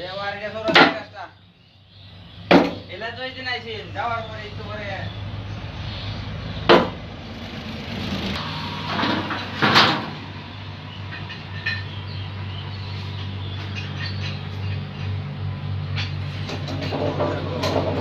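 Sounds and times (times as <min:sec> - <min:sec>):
sawmill machinery humming: 0:03.0 - 0:18.0
loud rushing noise: 0:05.3 - 0:11.2.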